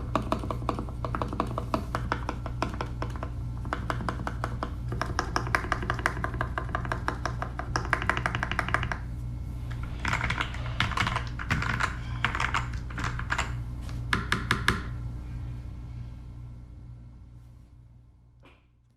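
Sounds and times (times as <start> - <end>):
mechanical keyboard typing: 4.9 - 9.0, 10.0 - 13.5.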